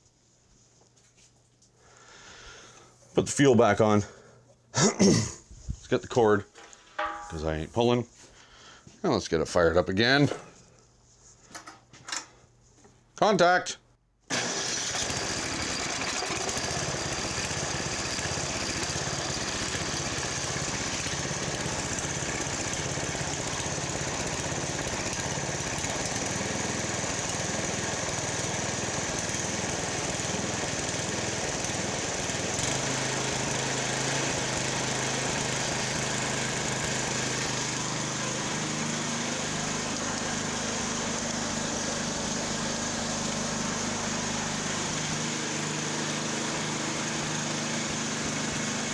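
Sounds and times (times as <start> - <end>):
small gas engine running: 14.3 - 48.9.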